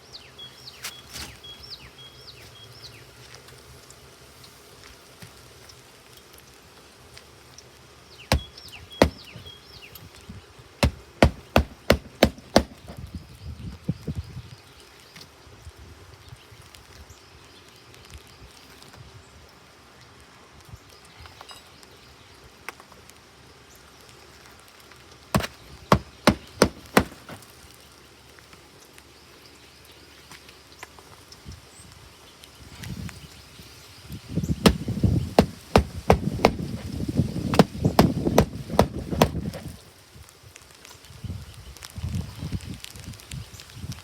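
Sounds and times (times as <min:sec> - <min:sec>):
hammer strikes: 0:08.3 - 0:09.4, 0:10.8 - 0:13.0, 0:25.4 - 0:27.4, 0:35.4 - 0:36.8
heavy rumbling and banging: 0:34.6 - 0:39.6.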